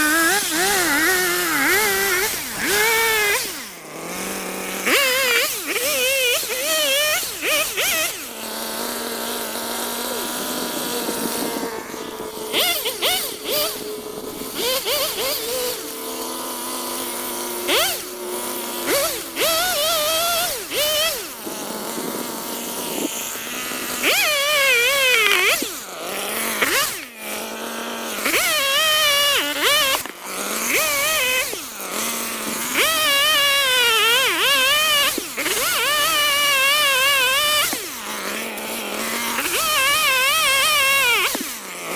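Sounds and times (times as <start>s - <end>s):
chainsaw revving and cutting wood: 0.0s - 41.9s.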